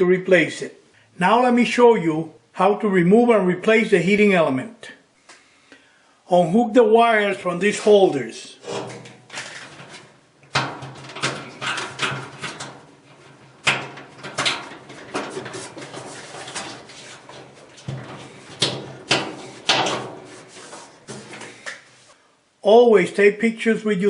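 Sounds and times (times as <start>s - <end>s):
clicks and rattles of wire: 8.6s - 21.8s.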